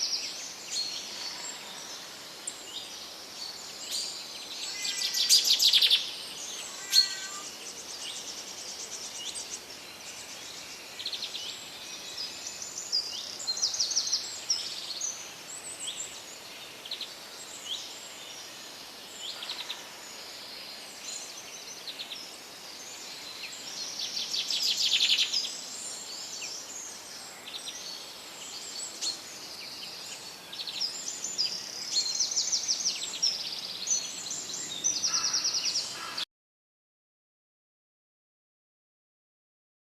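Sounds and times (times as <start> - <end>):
faint background hiss: 0.0 - 36.1
songbirds singing and trilling: 0.0 - 36.3.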